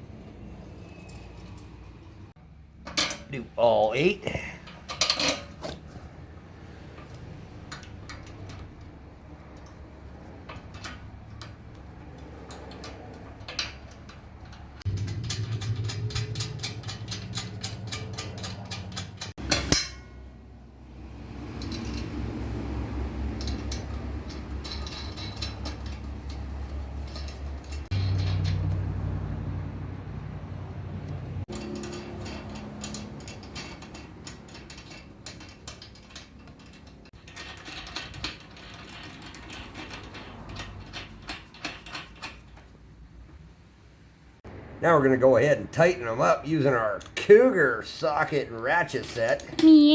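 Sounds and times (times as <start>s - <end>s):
metal nuts and washers clinking: 0.1s - 20.4s, 21.4s - 42.9s, 46.5s - 49.9s
low hum: 14.5s - 33.4s.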